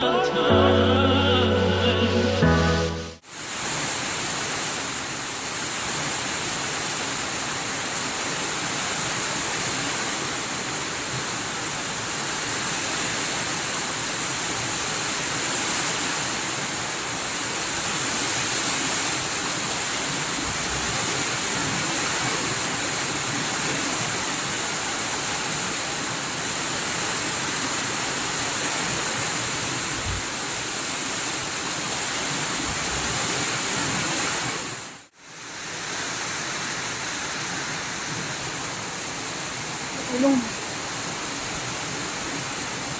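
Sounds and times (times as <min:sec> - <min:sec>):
rain falling: 0:16.6 - 0:35.1.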